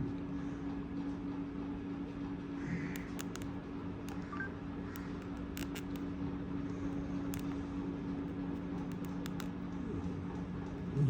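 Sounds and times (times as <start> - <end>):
steady low hum: 0.0 - 11.0
phone button clicks: 2.9 - 6.1.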